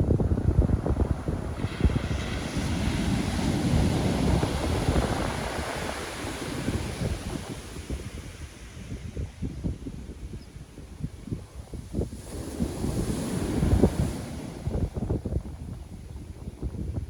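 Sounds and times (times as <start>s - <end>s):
wind buffeting microphone: 0.0s - 17.0s
ocean wave breaking on shore: 0.1s - 8.8s, 12.1s - 15.0s.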